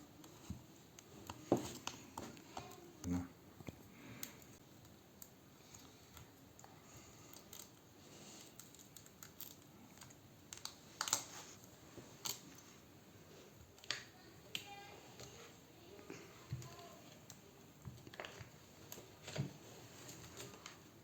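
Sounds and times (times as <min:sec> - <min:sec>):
small tools clicking and scraping: 0:04.2 - 0:12.7.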